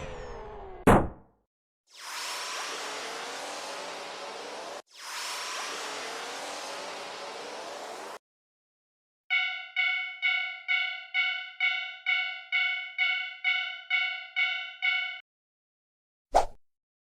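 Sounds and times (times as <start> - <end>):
railroad crossing bell ringing: 9.3 - 15.2.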